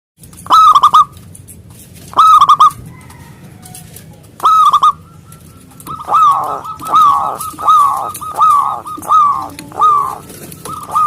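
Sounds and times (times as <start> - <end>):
dove cooing: 0.5 - 1.2, 2.1 - 3.4, 4.4 - 11.0.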